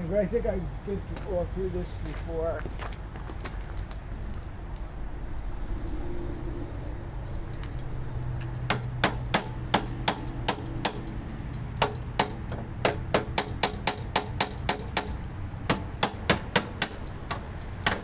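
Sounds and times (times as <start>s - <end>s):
hammer tapping on metal: 8.7s - 18.0s.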